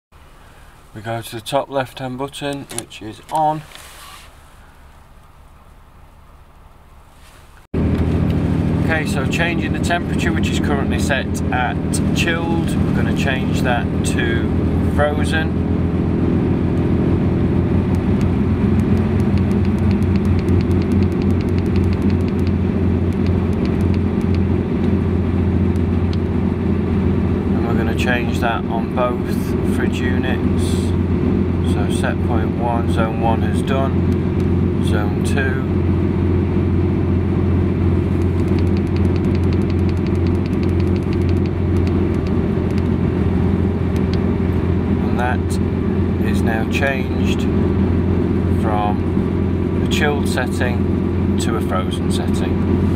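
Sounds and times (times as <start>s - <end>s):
truck engine droning: 7.8s - 52.9s
light controller clicks: 17.9s - 24.4s, 38.2s - 42.9s
rapid light ticks: 17.9s - 24.4s, 38.2s - 42.9s.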